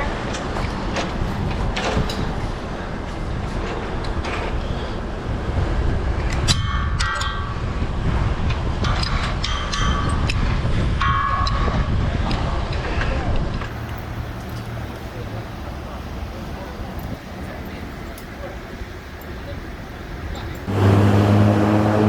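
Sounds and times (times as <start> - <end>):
heavy machinery rumble: 20.5 - 22.0.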